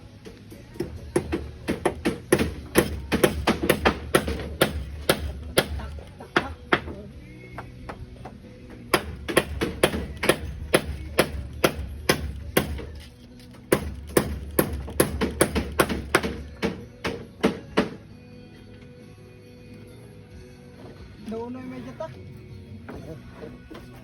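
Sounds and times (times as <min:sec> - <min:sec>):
hammer striking: 0:00.8 - 0:05.8, 0:08.9 - 0:13.0, 0:13.7 - 0:18.0.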